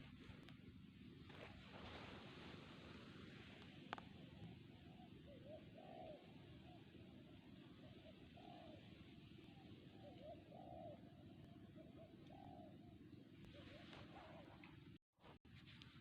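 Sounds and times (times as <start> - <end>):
dove cooing: 1.3 - 15.0.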